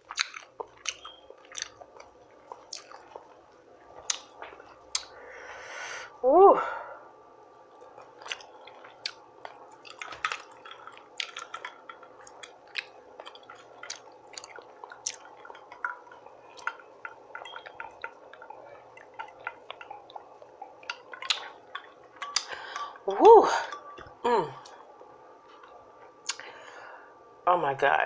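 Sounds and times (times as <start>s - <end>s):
wet chewing and mouth smacking: 0.0s - 5.2s, 7.7s - 23.1s, 25.5s - 26.5s.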